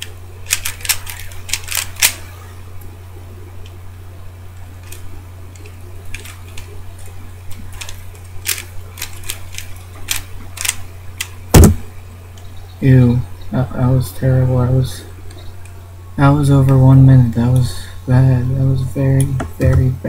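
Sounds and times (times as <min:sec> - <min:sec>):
low hum: 0:00.0 - 0:20.0
puzzle cube clicking: 0:00.5 - 0:02.2
loud thump: 0:11.5 - 0:11.9.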